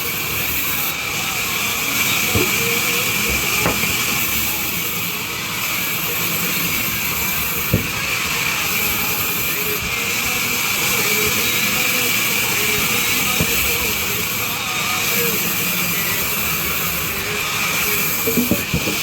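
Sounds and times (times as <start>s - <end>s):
band saw cutting wood: 0.0s - 19.0s
sharp knocks: 2.4s - 4.2s, 18.3s - 19.0s.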